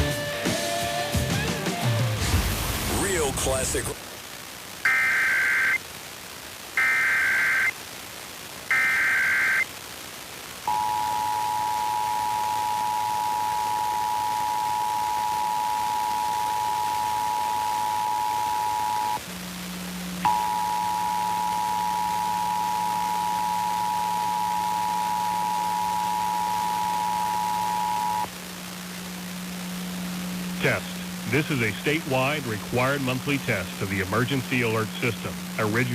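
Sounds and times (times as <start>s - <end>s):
short data bursts: 4.8s - 5.8s, 6.8s - 7.8s, 8.7s - 9.7s, 10.7s - 19.2s, 20.2s - 28.3s
low hum: 10.7s - 35.6s.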